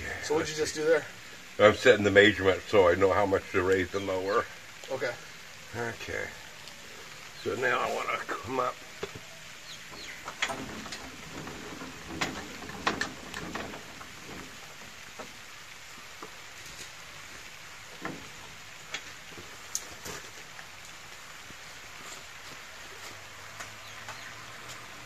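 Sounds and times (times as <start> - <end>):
light rain hissing: 0.0 - 25.0
clicks and knocks: 10.2 - 14.6.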